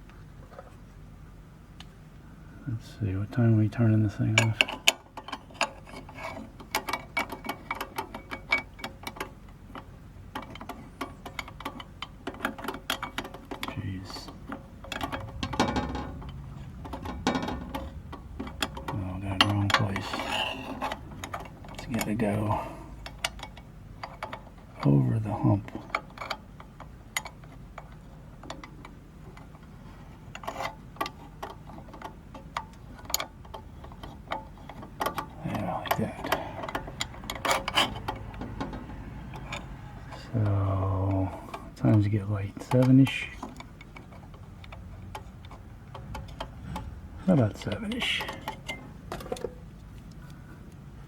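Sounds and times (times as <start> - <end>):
timer dial clicks and ticks: 31.4 - 39.8.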